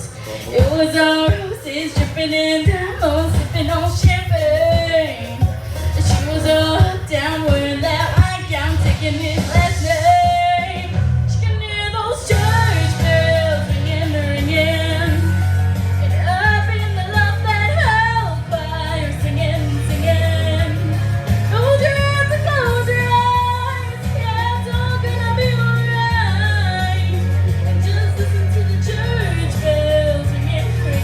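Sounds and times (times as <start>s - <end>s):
instrumental accompaniment with bass: 0.0s - 31.0s
girl singing: 6.0s - 15.3s.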